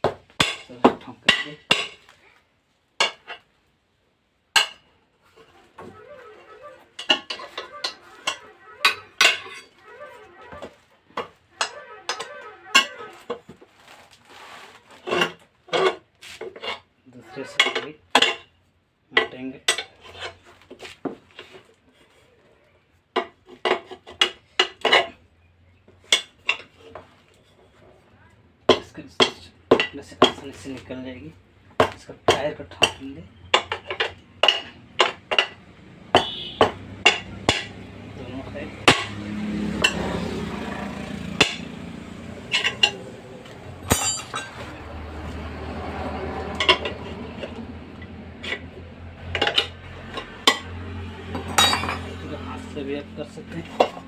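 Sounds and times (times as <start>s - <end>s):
tyre levers clinking on metal rim: 5.8s - 13.5s, 42.5s - 43.0s, 43.8s - 44.8s
tyre levers clinking on wheel rim: 42.5s - 44.8s.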